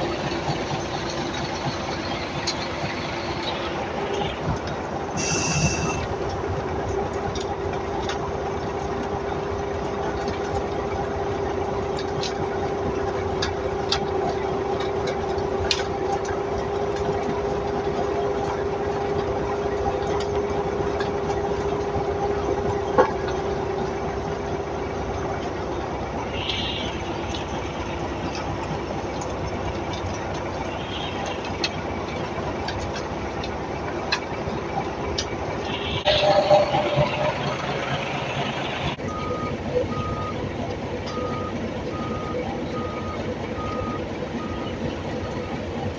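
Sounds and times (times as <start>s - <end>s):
heavy machinery engine running: 0.0s - 45.9s.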